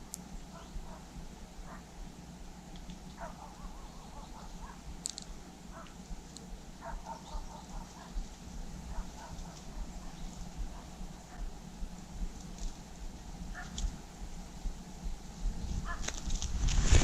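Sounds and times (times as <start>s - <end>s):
bird calls: 0.0s - 2.0s, 3.0s - 11.7s
low steady background: 0.0s - 16.6s.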